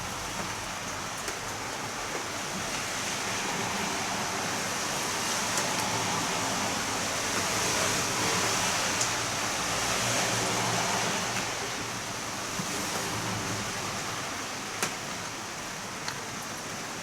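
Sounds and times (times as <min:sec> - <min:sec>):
heavy rain falling: 0:00.0 - 0:17.0.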